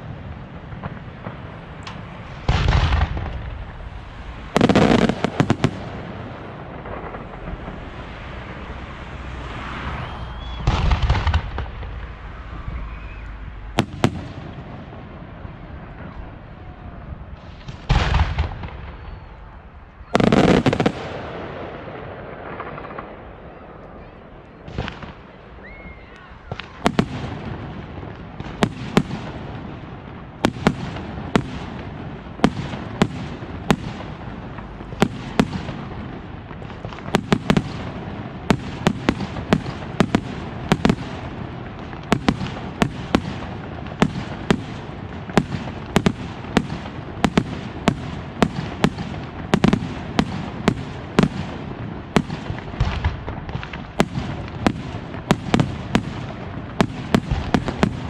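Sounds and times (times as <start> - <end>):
continuous rumble: 0.0 - 58.0
firework bangs: 0.0 - 58.0.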